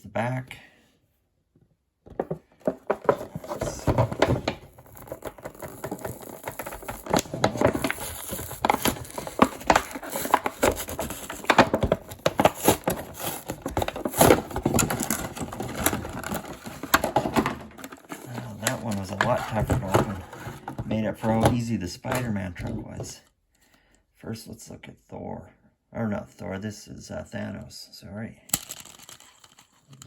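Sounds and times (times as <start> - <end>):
plastic and card packaging crackling: 2.7 - 22.3.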